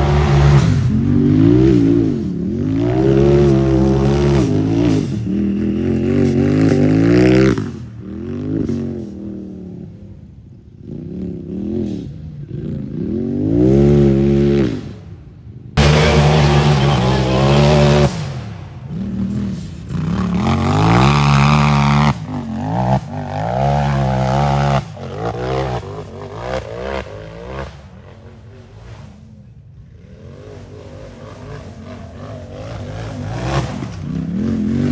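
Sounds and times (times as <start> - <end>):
engine revving hard: 0.0 - 9.6, 15.8 - 29.3, 30.2 - 34.9.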